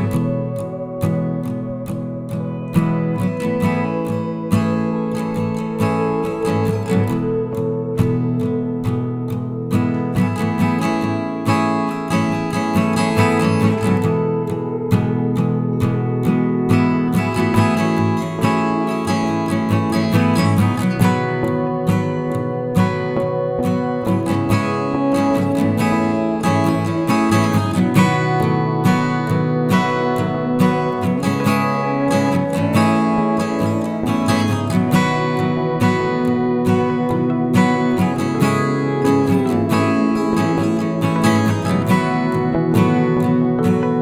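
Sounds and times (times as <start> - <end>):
strummed acoustic guitar music: 0.0 - 44.0.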